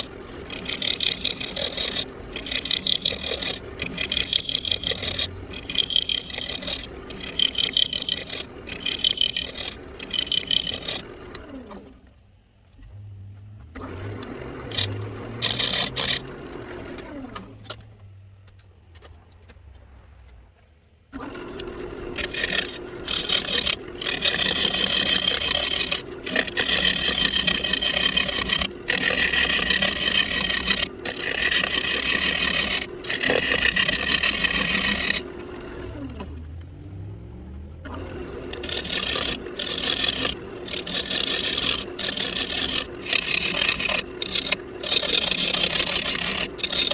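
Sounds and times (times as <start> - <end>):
turning tool cutting wood: 0.0 - 12.1, 12.9 - 20.0, 21.1 - 46.9
wood lathe spinning: 0.0 - 12.1, 13.7 - 18.1, 21.1 - 36.8, 37.6 - 46.9.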